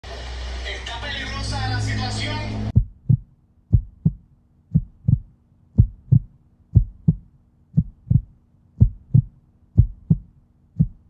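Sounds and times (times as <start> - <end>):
heartbeat double thump: 2.7 - 11.0.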